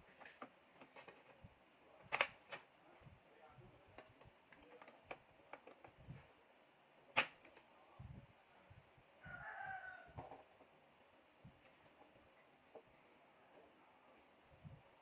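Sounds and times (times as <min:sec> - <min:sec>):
small clicks and taps: 0:03.9 - 0:06.1
rooster crowing: 0:09.2 - 0:10.3.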